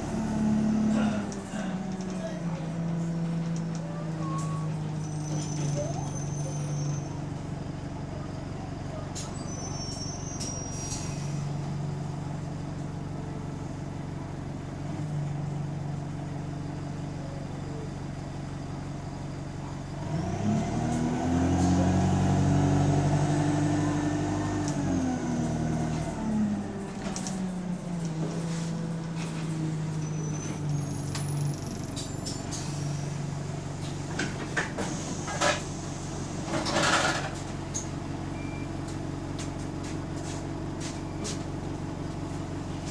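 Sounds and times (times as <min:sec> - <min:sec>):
bus diesel engine revving: 0:00.0 - 0:07.7, 0:19.9 - 0:37.8
brief high squeaks: 0:04.2 - 0:07.2, 0:09.2 - 0:11.4, 0:30.0 - 0:33.2.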